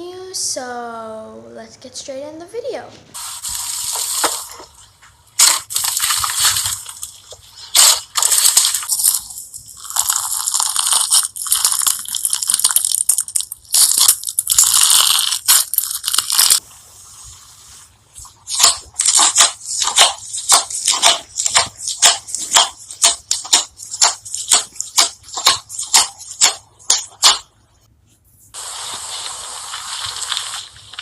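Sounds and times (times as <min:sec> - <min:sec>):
slime crackling and popping: 0:05.4 - 0:16.6, 0:18.5 - 0:27.4, 0:28.6 - 0:31.0.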